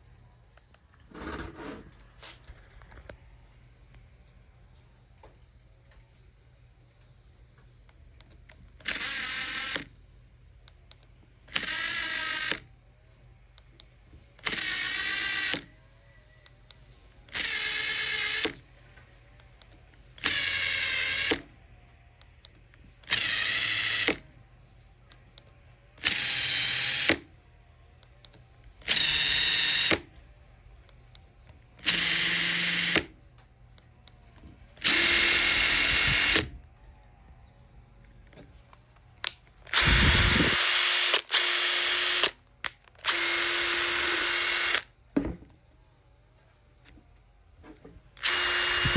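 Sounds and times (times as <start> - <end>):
impact driver motor whine: 8.8 - 9.9, 11.5 - 12.6, 14.4 - 15.7, 17.3 - 18.6, 20.2 - 21.5, 23.0 - 24.2, 26.0 - 27.3, 28.8 - 30.2, 31.8 - 33.2, 34.7 - 36.7, 39.6 - 45.4, 48.1 - 48.9.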